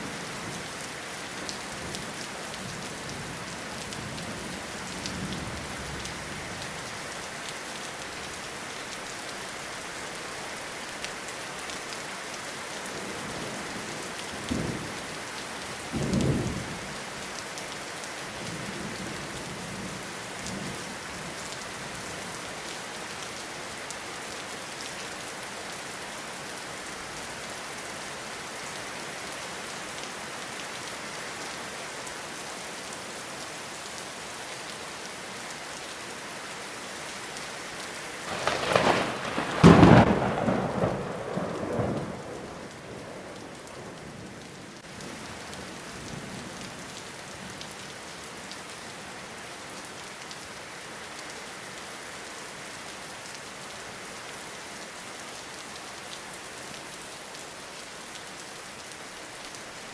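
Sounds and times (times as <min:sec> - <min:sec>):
steady rain falling: 0:00.0 - 0:59.9
low thunder rumbles: 0:38.3 - 0:44.4.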